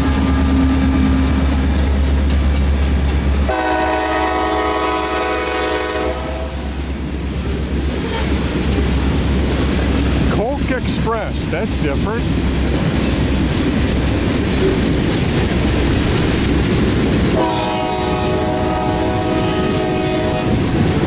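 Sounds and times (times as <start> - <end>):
diesel locomotive engine rumble: 0.0 - 21.0
train air horn blast: 3.5 - 6.8, 17.3 - 21.0.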